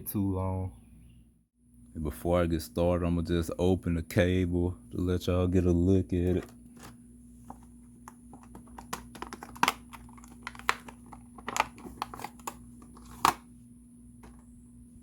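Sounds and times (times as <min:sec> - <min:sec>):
packaging crinkling and rustling: 0:06.3 - 0:13.5
packaging snapping: 0:08.1 - 0:13.5.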